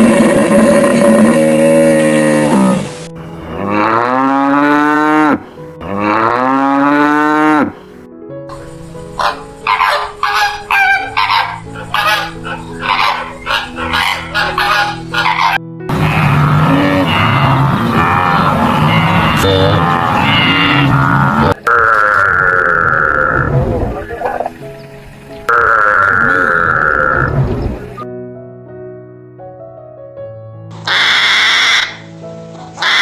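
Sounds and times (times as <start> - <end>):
cattle mooing: 0.0 - 7.8, 13.6 - 23.6, 25.5 - 27.8, 30.8 - 32.0.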